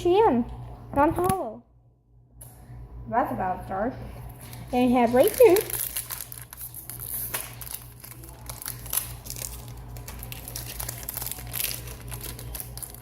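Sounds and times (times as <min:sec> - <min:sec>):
foil wrapper crinkling: 0:04.4 - 0:13.0.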